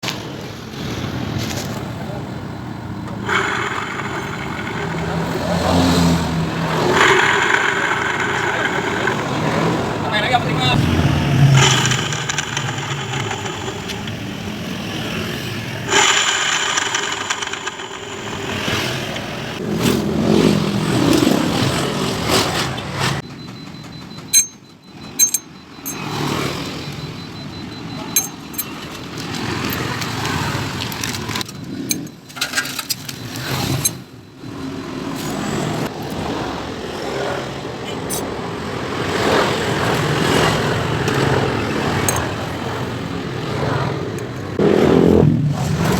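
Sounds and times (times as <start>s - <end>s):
scooter engine running roughly: 3.1s - 19.6s.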